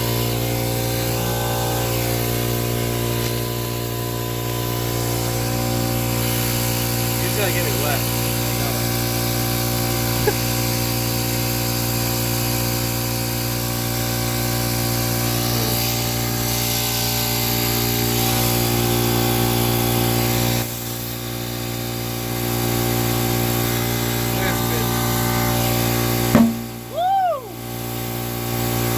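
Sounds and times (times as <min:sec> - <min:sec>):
motor-driven machine humming: 0:00.0 - 0:10.4.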